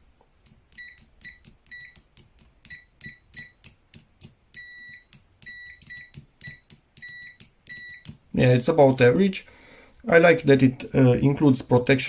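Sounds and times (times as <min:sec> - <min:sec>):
high electronic beeps: 0:00.7 - 0:02.0, 0:02.7 - 0:03.6, 0:04.6 - 0:08.2.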